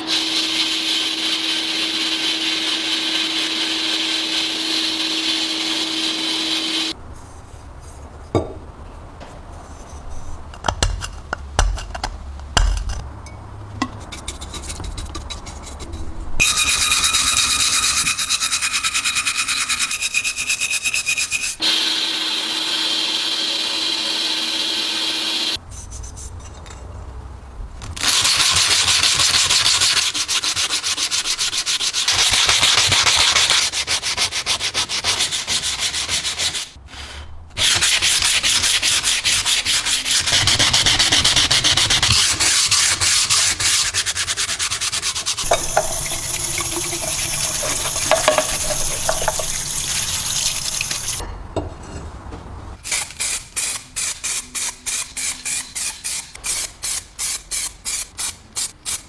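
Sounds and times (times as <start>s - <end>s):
hand sanding metal parts: 13.8s - 21.6s, 28.0s - 51.2s.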